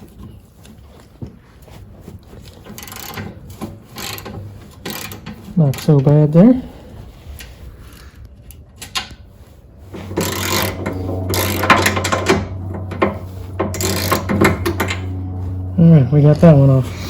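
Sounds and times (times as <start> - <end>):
steady low hum: 9.7 - 17.0.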